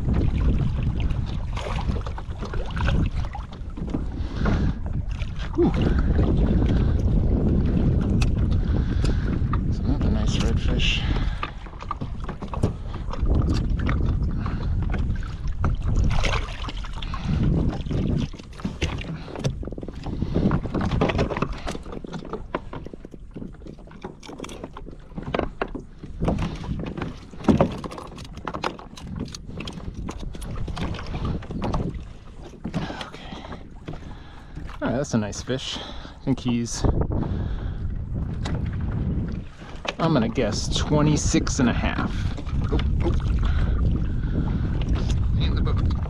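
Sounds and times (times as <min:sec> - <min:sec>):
wind rumble on microphone: 0:00.0 - 0:46.0
knocks and clicks on kayak: 0:00.1 - 0:35.0, 0:35.8 - 0:41.3, 0:41.9 - 0:46.0.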